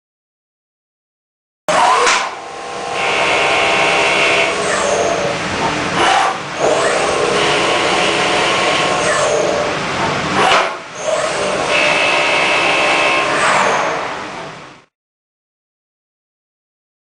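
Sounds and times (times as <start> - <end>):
milling machine cutting: 1.7 - 14.6.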